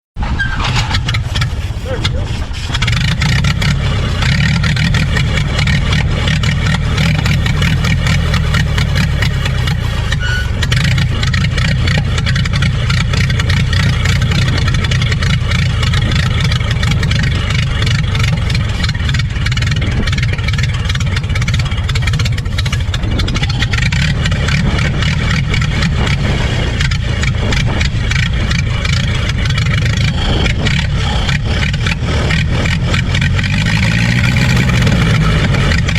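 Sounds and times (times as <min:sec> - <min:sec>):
engine running steadily: 0:00.2 - 0:35.9.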